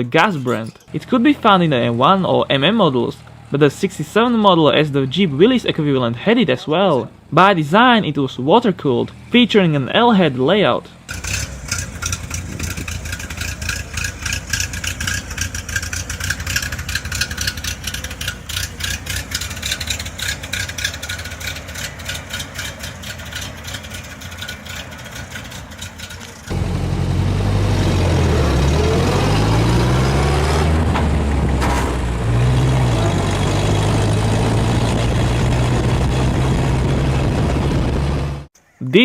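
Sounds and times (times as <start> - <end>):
engine revving: 9.0 - 38.5
engine running with rhythmic firing: 11.1 - 38.5.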